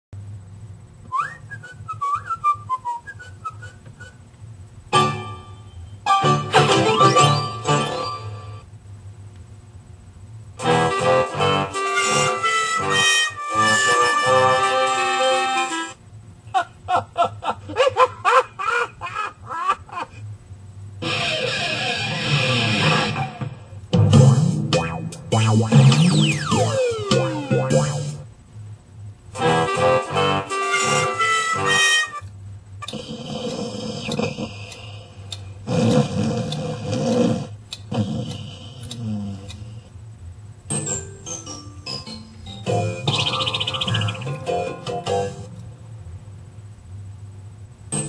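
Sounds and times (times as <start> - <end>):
high whistle-like sweeping tone: 1.1 - 4.2
dense hissy music: 4.9 - 8.7, 10.5 - 19.7, 20.7 - 28.4, 29.3 - 35.7, 40.7 - 48.0
short pitched notes bending: 24.0 - 28.3.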